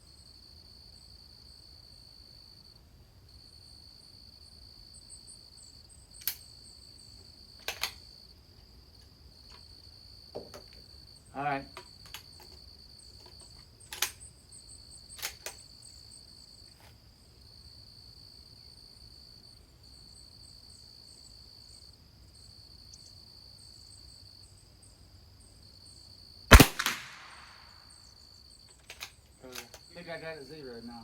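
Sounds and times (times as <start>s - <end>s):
insects trilling: 0.3s - 31.0s
rifle shot: 26.5s - 27.8s.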